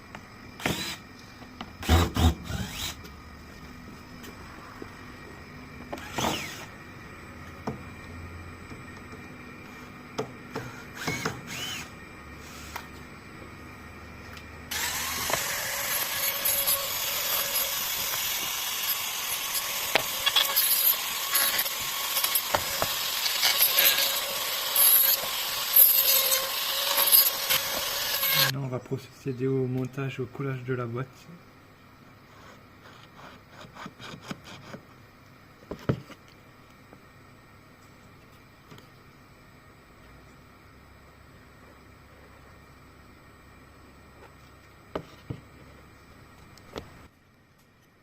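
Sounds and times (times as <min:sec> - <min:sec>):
power tool grinding wood: 0:14.7 - 0:28.6.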